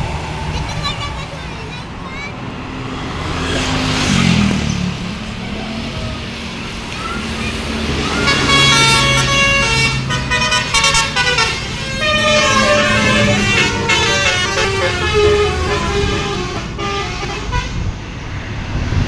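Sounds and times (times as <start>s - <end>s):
bus engine running: 0.0s - 19.0s
multi-tone bus horn melody: 7.8s - 18.0s.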